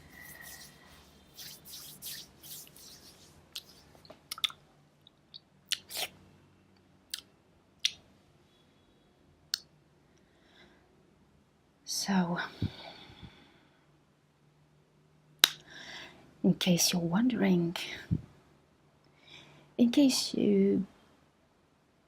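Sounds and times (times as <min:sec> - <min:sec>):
lip and tongue clicks: 0:04.3 - 0:04.6, 0:05.3 - 0:06.1, 0:07.1 - 0:08.0.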